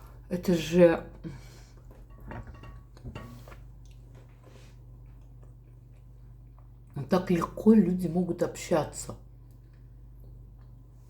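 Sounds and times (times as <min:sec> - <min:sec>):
low steady hum: 0:00.0 - 0:11.0
soft chewing: 0:03.2 - 0:07.0, 0:09.4 - 0:11.0.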